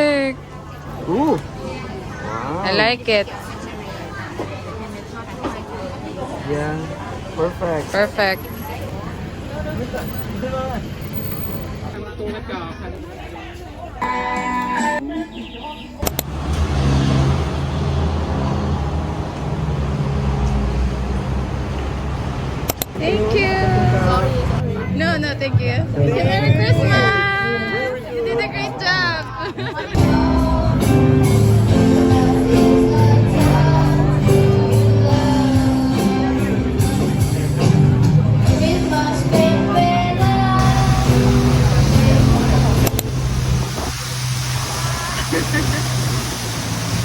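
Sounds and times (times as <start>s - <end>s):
traffic noise: 0.0s - 47.0s
song with singing and guitar: 14.0s - 15.2s, 30.0s - 42.9s
vehicle engine rumbling: 16.0s - 27.0s, 29.9s - 47.0s.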